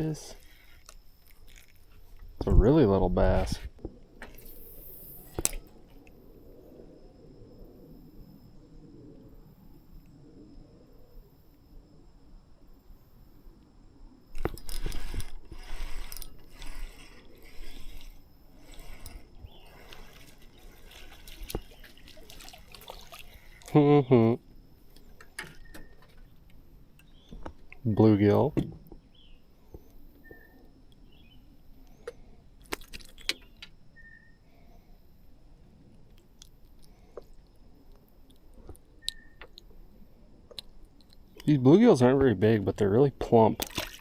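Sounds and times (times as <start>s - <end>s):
fishing reel ratchet clicking: 14.4s - 19.2s.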